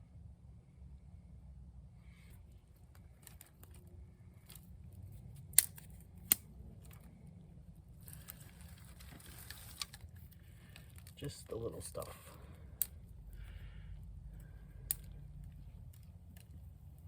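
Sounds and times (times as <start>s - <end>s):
kindling sticks clicking: 4.5s - 7.1s, 12.8s - 13.7s, 14.4s - 17.0s
sticks snapping: 5.4s - 7.0s, 12.8s - 13.5s, 14.4s - 16.5s.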